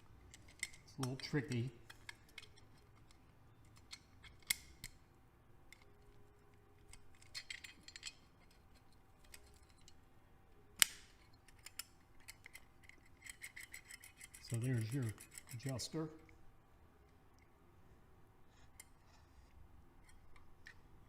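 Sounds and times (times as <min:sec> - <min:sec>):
metal engine parts clicking: 0:06.8 - 0:10.0, 0:11.3 - 0:15.9.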